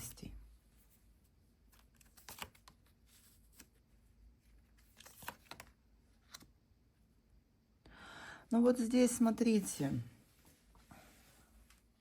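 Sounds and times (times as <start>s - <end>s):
cards being handled: 1.7s - 3.8s, 4.5s - 6.5s.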